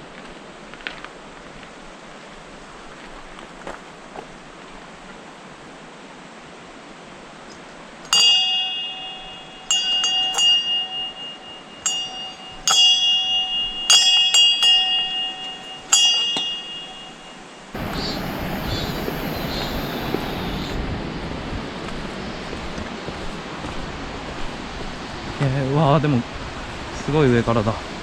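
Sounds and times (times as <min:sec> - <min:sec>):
small metal bell ringing: 0:08.1 - 0:17.8
waterfall rushing: 0:13.2 - 0:28.0.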